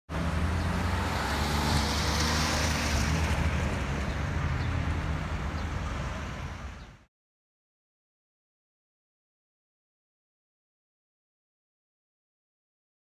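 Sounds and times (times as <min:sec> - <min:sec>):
traffic engine rumble: 0:00.1 - 0:07.0
tyre noise of passing vehicles: 0:00.1 - 0:07.1.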